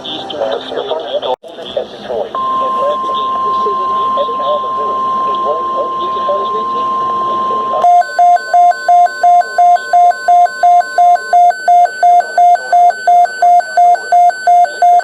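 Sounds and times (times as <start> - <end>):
steady single tone: 2.4 - 8.0
two-tone warble alarm beeps: 2.4 - 15.0.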